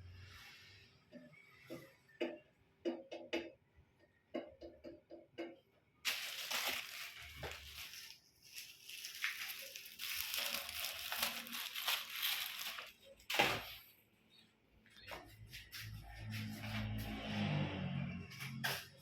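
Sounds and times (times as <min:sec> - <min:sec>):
packaging crinkling: 0:06.1 - 0:13.8.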